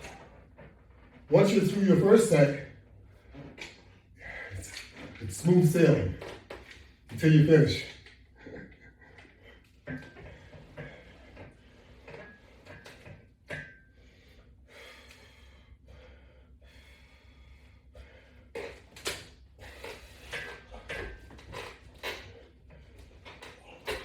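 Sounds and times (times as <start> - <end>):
person breathing hard: 14.0 - 18.5.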